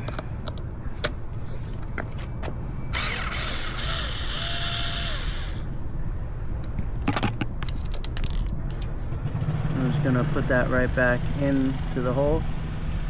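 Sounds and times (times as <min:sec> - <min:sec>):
rapid ratcheting clicks: 0:03.0 - 0:05.6.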